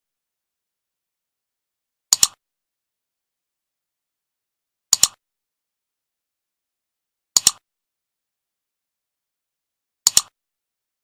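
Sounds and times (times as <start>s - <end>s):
computer mouse clicks: 2.1s - 2.4s, 4.9s - 5.2s, 7.4s - 7.6s, 10.0s - 10.4s.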